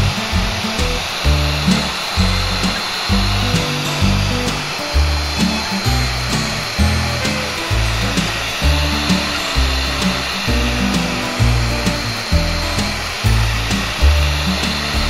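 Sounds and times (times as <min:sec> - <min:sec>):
mortiser motor running: 0:00.0 - 0:10.9
background music with bass beat: 0:00.0 - 0:15.0.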